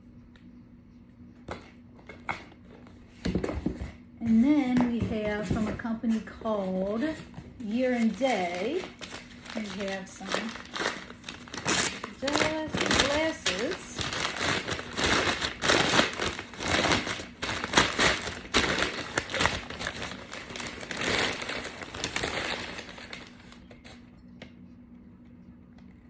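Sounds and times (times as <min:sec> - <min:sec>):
packaging crinkling and rustling: 0:05.2 - 0:24.0.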